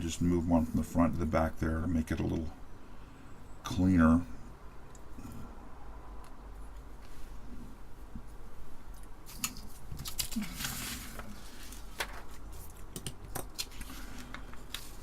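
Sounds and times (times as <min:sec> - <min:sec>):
faint steady hum: 0:00.0 - 0:15.0
handling rustle: 0:08.9 - 0:15.0.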